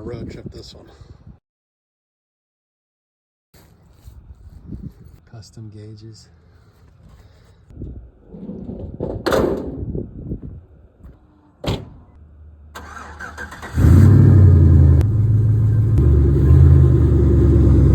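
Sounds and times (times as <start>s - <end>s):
engine cranking: 12.8s - 14.2s.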